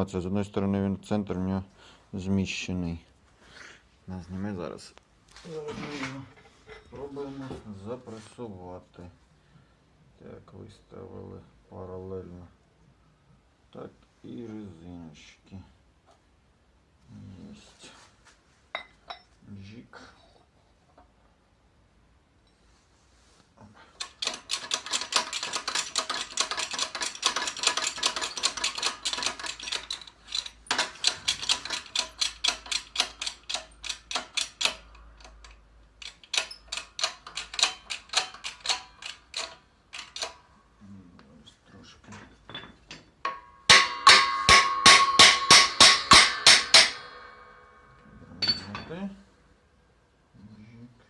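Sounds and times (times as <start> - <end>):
ratchet wrench clicking: 24.0 - 40.4.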